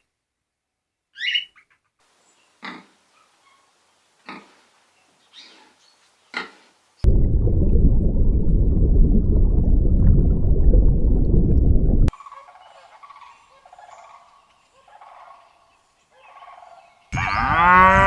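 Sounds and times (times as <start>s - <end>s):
loud low rumbling: 7.0s - 12.1s
farm bird calls: 12.2s - 18.0s.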